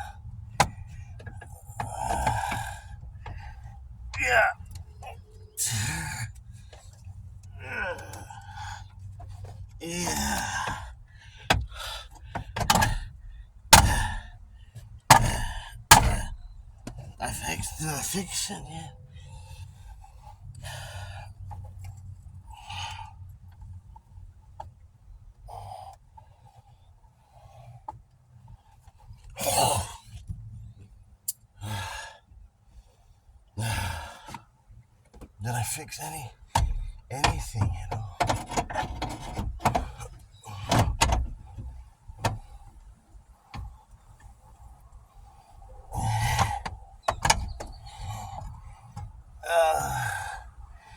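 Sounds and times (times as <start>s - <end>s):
person grunting with effort: 4.2s - 4.7s, 5.6s - 6.3s, 7.6s - 8.8s, 9.8s - 10.9s, 49.4s - 50.4s
man sighing heavily: 5.5s - 6.4s, 7.6s - 8.9s, 9.8s - 12.1s, 33.6s - 34.3s, 45.9s - 46.6s, 49.4s - 50.5s
sharp knocks and bangs on metal: 13.8s - 14.2s, 15.1s - 16.4s.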